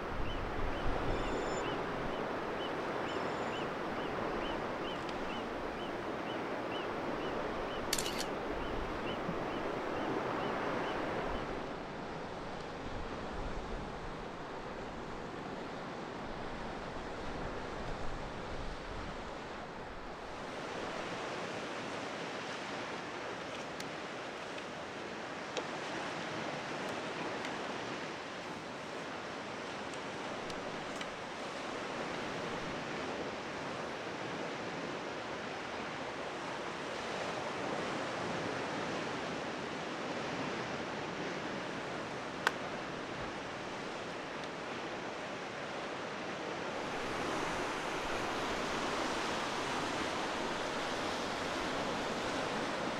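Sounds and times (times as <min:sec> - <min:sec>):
sea surf washing: 0:00.0 - 0:52.9
sharp click: 0:07.9 - 0:08.4.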